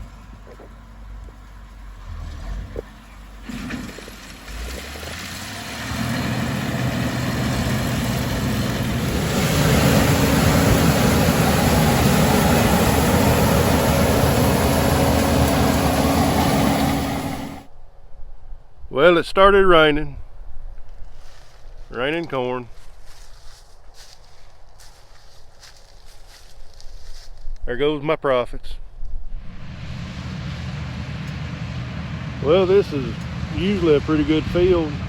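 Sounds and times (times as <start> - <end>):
harvesting machine engine running: 0.0 - 17.7, 29.4 - 35.0.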